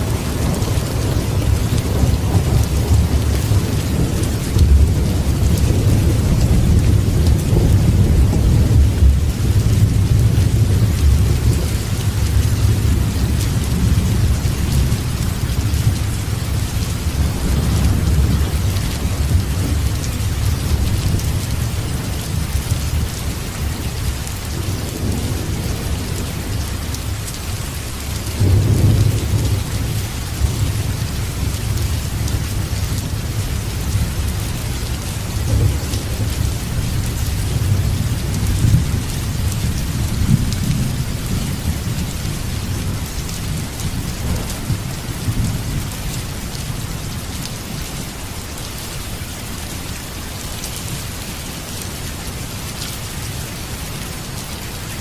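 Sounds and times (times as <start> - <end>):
thunder rumbling: 0.0 - 47.2
steady rain: 0.0 - 55.0.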